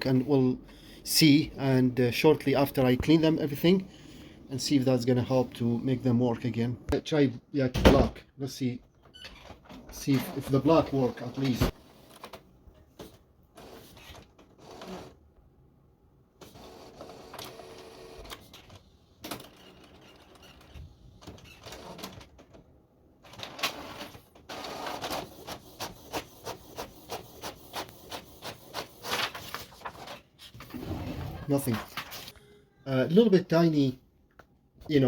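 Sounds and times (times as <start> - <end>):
printer whirring and clicking: 16.4 - 22.4.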